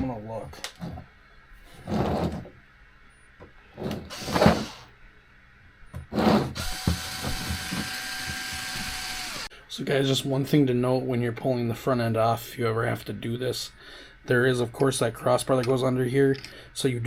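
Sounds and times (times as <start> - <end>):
electric screwdriver whine: 4.1 - 4.9, 6.6 - 9.5.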